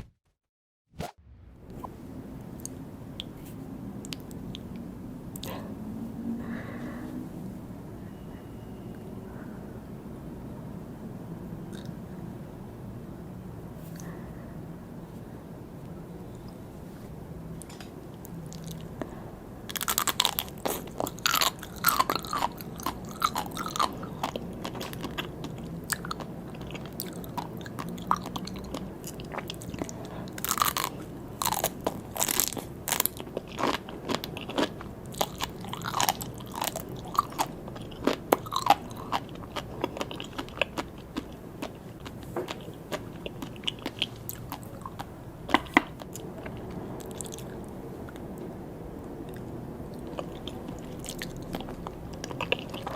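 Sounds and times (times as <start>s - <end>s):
quiet chewing: 5.4s - 5.7s, 11.7s - 12.0s, 17.6s - 48.5s, 49.2s - 52.9s
crisp crunching bites: 30.4s - 41.3s.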